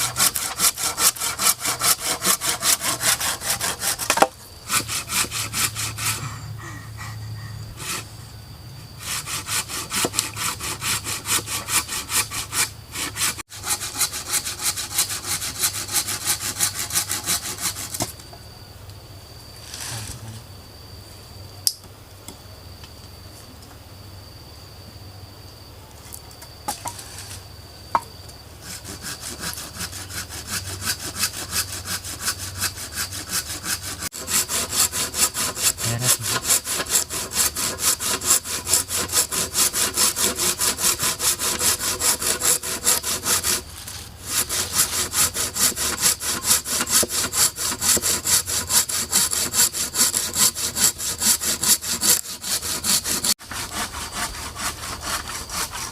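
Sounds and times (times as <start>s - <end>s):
hand saw cutting wood: 0.0s - 6.4s, 7.8s - 8.1s, 9.0s - 18.1s, 28.6s - 55.9s.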